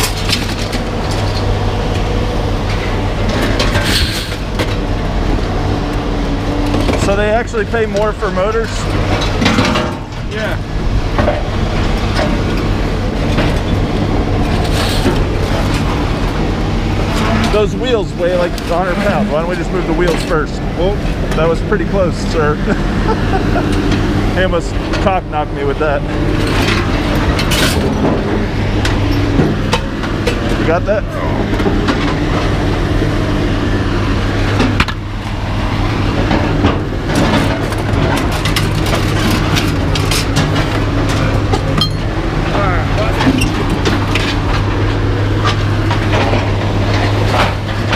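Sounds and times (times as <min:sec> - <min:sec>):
metal clicks and clanks: 0:00.0 - 0:02.0, 0:26.3 - 0:28.2, 0:36.3 - 0:42.1
heavy machine engine droning: 0:00.0 - 0:47.9.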